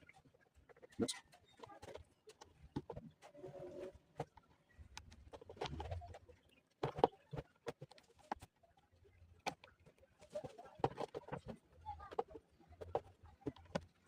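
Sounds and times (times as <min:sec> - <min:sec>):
hands clicking and tapping plastic: 0:04.2 - 0:06.0, 0:09.4 - 0:14.0.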